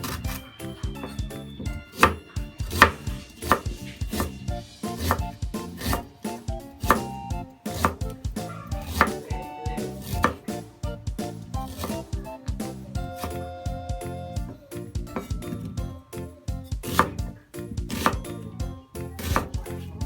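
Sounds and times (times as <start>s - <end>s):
knife chopping on cutting board: 0.0s - 13.5s, 16.8s - 18.3s, 19.2s - 19.7s
background music: 0.0s - 20.0s.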